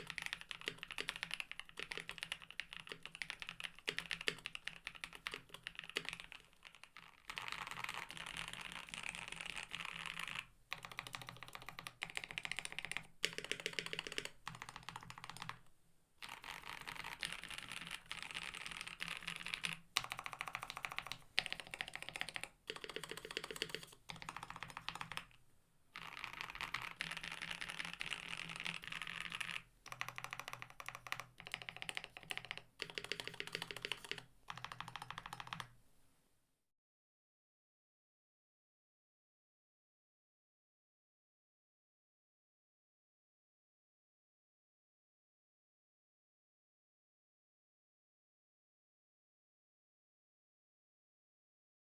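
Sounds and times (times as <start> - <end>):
mechanical keyboard typing: 0.0 - 25.4, 26.0 - 35.7.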